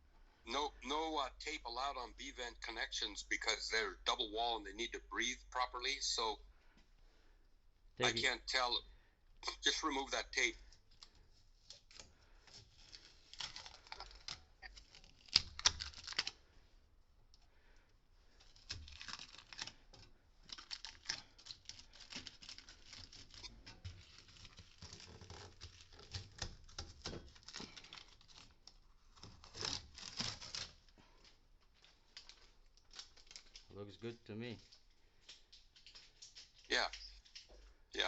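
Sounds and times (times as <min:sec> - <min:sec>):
tape tearing and crinkling: 0:10.9 - 0:16.4, 0:18.4 - 0:33.7.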